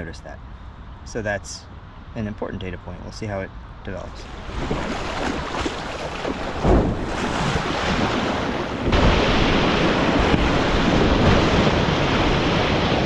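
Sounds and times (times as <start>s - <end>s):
wind on microphone: 4.1s - 13.0s.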